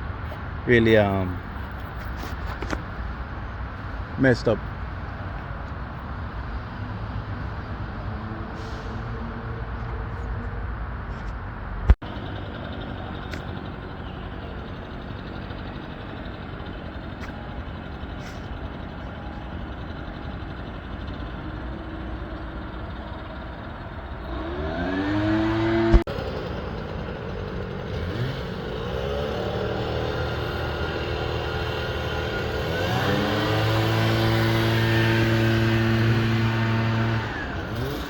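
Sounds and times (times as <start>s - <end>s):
engine running and revving: 11.8s - 38.0s.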